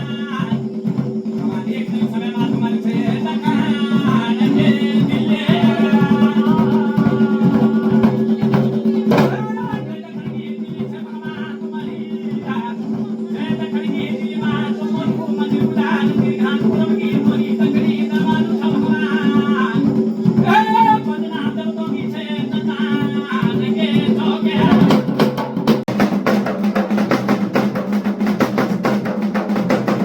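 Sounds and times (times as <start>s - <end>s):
quick rhythmic beat: 0.0s - 30.0s
person singing: 1.4s - 25.1s.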